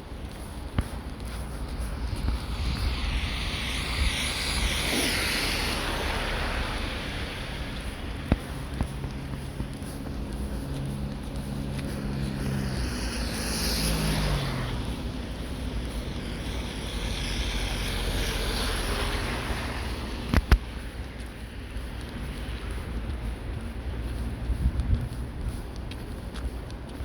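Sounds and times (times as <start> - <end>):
wind: 0.0 - 27.0
vehicle passing: 1.3 - 20.4.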